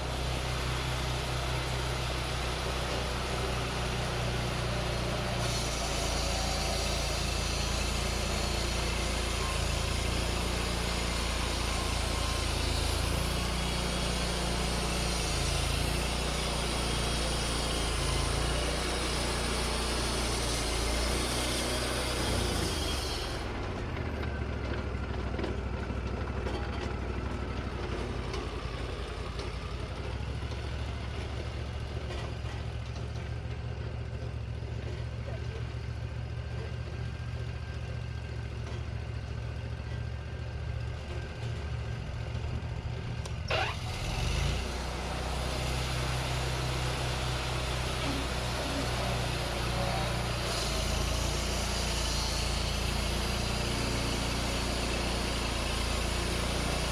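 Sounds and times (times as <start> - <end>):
sawmill engine running: 0.0 - 56.9
band blade cutting log: 5.2 - 9.6, 10.2 - 23.5, 47.5 - 56.9.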